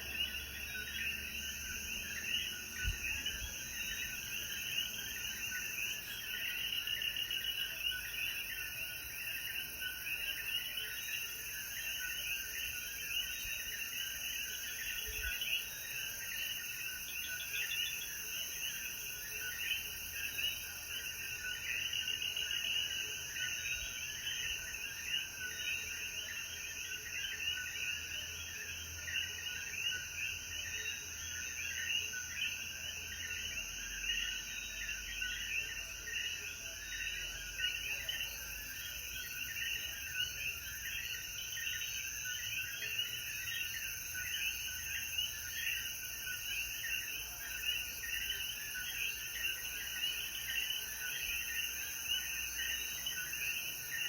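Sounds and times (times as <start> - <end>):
frogs chirping: 0.0 - 54.0.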